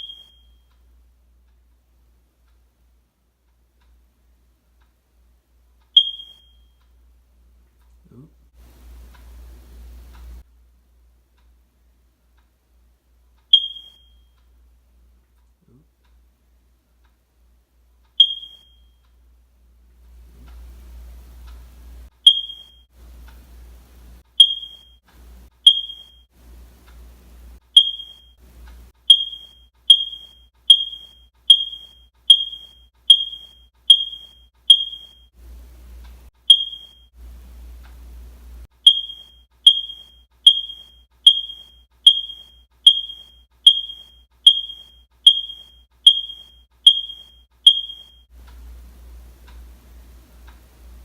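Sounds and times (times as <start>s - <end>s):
smoke alarm beeping: 0.0s - 0.8s, 5.9s - 6.9s, 13.5s - 14.5s, 18.1s - 19.1s, 22.1s - 23.0s, 24.2s - 26.4s, 27.6s - 35.4s, 36.4s - 37.2s, 38.6s - 48.3s.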